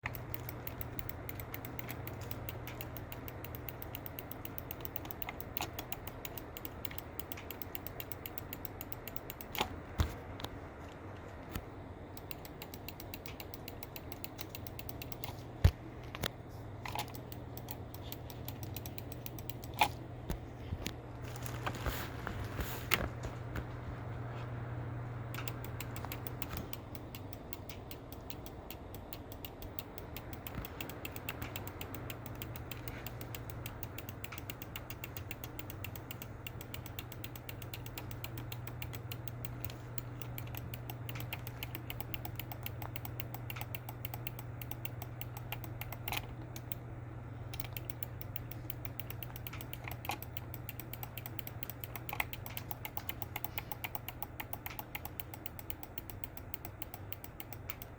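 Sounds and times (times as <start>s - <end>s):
mouse button clicking rapidly: 0.0s - 9.7s, 12.2s - 15.4s, 25.4s - 46.8s, 47.5s - 57.9s
steady low hum: 0.0s - 57.9s.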